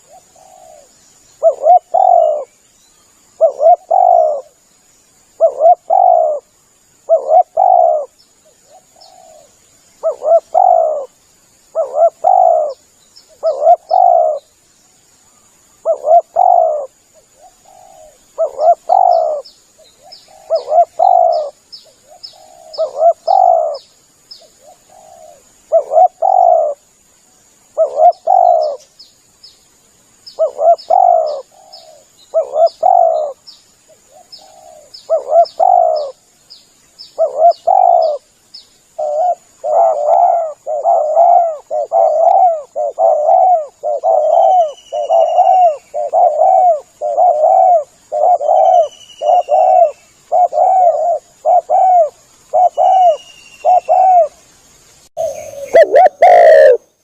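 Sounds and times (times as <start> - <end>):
dove cooing: 0.0 - 2.5, 3.4 - 4.6, 5.4 - 14.5, 15.8 - 23.8, 24.6 - 26.8, 27.8 - 28.9, 30.4 - 33.4, 34.1 - 36.2, 37.2 - 38.2, 39.0 - 54.4, 55.2 - 56.9.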